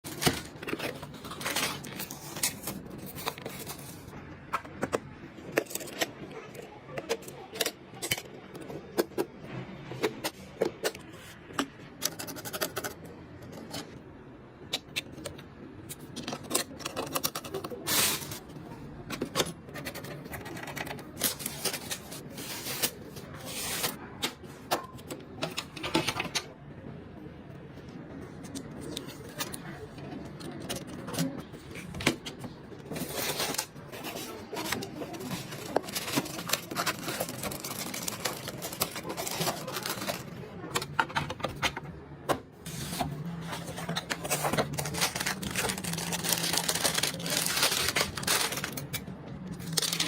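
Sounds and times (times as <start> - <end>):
scraping and rustling: 30.9 - 41.7, 42.6 - 49.0.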